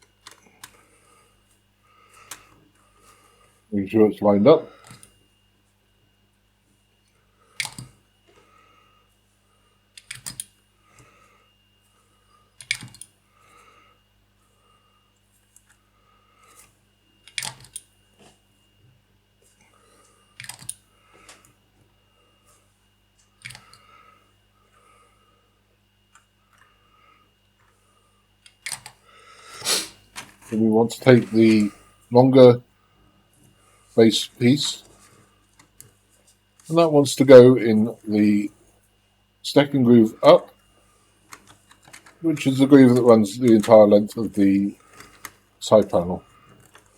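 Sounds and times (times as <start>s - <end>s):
plastic parts clicking and tapping: 41.3s - 42.2s.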